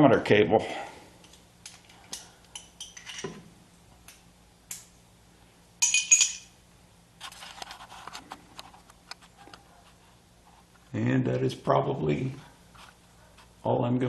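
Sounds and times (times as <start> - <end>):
loud ringing clink: 5.8 - 6.5
metal hand tools clinking: 5.8 - 6.5.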